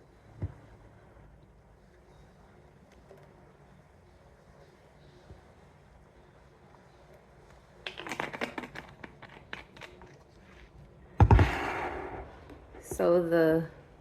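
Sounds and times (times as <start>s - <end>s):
loud thump: 11.2s - 12.4s.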